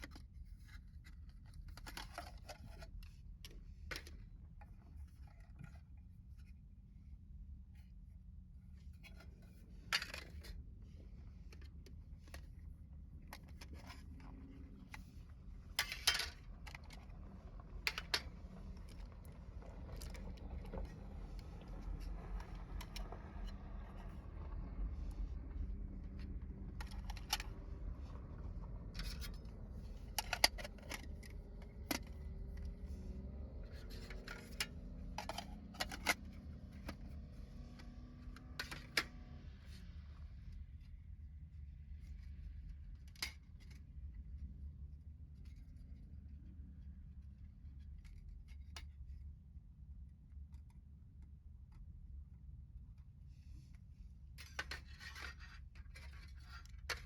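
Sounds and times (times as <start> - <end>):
steady low rumble: 6.0 - 37.5
metal parts clinking and scraping: 13.3 - 17.1, 29.0 - 32.9.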